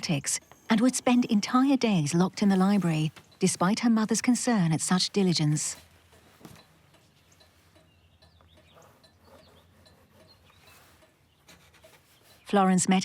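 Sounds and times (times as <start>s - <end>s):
low steady hum: 0.0s - 10.2s.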